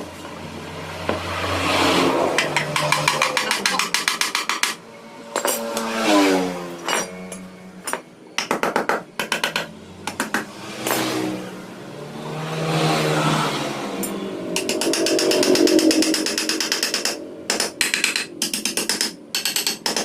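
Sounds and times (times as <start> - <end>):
metallic clicks of hand tools: 2.4 - 4.8, 14.0 - 20.0
pitched gliding sound: 12.3 - 17.6.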